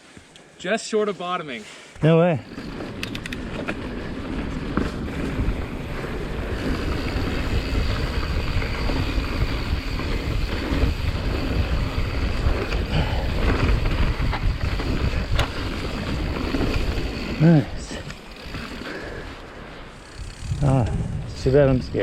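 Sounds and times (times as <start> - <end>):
bike tyres rolling on dirt: 0.0 - 22.0
wind on microphone: 4.4 - 17.4, 20.1 - 22.0.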